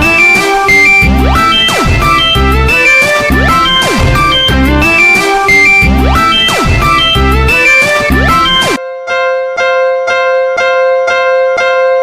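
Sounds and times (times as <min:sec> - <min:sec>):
music with heavy bass hits: 0:00.0 - 0:08.8.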